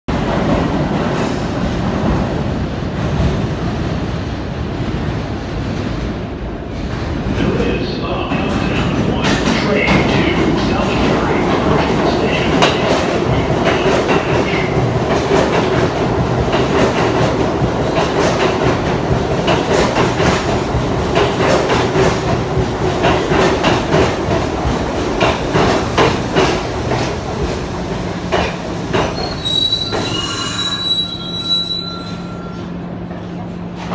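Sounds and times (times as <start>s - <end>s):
subway train rumbling on rails: 0.1s - 33.9s
high wheel squeal: 29.1s - 32.8s.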